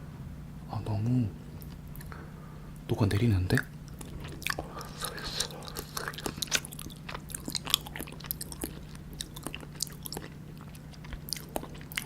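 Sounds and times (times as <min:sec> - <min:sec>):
wet mouth chewing clicks and smacks: 0:03.6 - 0:12.0.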